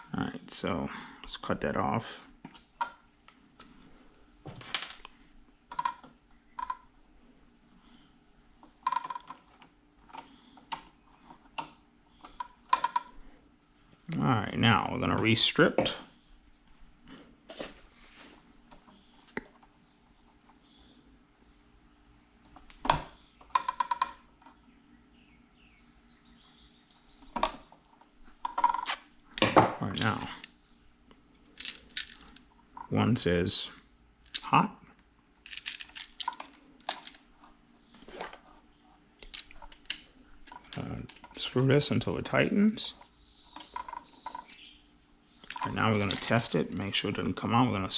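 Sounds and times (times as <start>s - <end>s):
light handling noise: 39.2s - 44.6s, 45.4s - 47.2s.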